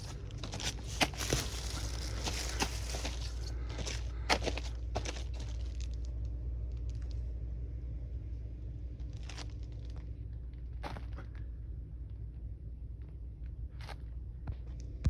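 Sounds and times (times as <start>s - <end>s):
plastic sheeting crinkling underfoot: 0.0s - 5.9s
steady low hum: 0.0s - 15.0s.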